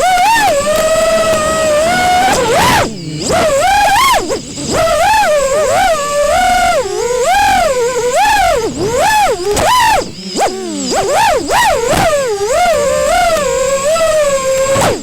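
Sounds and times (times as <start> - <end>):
drone motors whining: 0.0 - 15.0.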